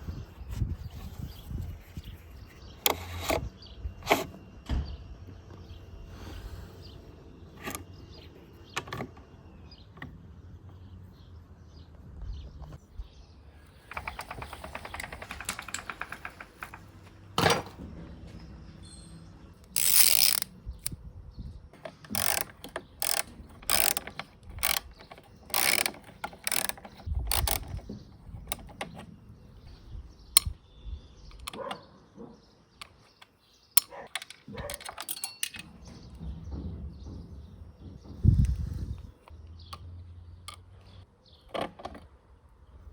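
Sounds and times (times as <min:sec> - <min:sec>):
recoil starter ratcheting: 0:13.9 - 0:17.0, 0:19.6 - 0:21.0, 0:21.8 - 0:29.0.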